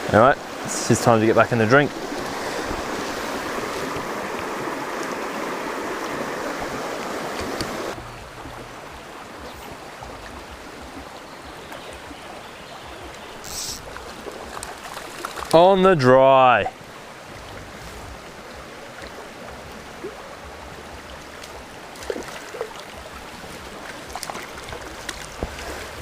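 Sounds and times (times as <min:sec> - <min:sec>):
mountain stream rushing: 0:00.0 - 0:26.0.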